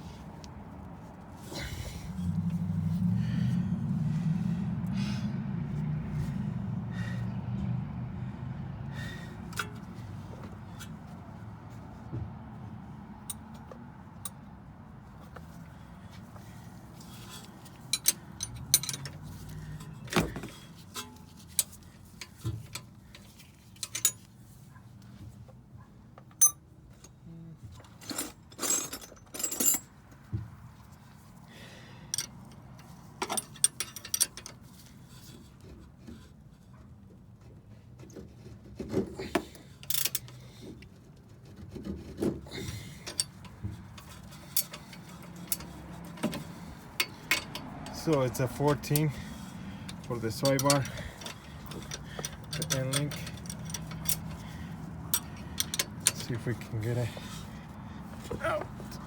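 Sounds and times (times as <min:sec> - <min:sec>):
hand tools clinking on metal: 0:17.0 - 0:24.3, 0:26.4 - 0:27.1, 0:27.8 - 0:29.9, 0:32.1 - 0:34.6, 0:42.5 - 0:59.0.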